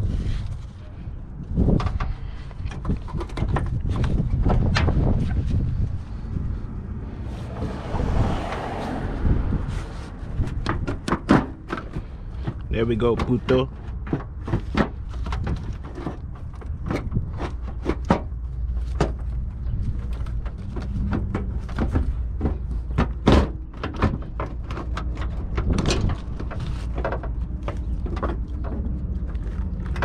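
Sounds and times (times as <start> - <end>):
low rumble: 0.0 - 11.1.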